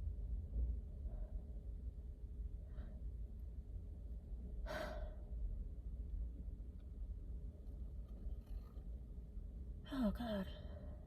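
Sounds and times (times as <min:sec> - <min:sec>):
faint breath: 0:01.0 - 0:01.9, 0:02.5 - 0:03.4, 0:04.6 - 0:05.5, 0:10.5 - 0:11.0.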